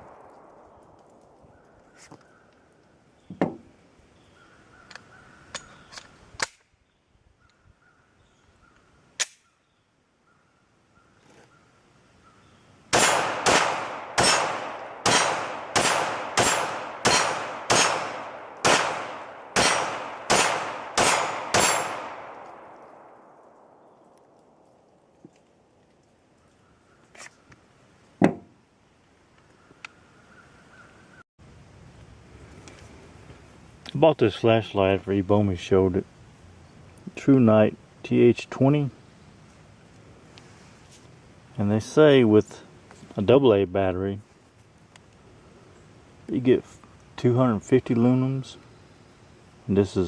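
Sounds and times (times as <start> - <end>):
pistol shots with ringing echo: 12.9 - 23.9.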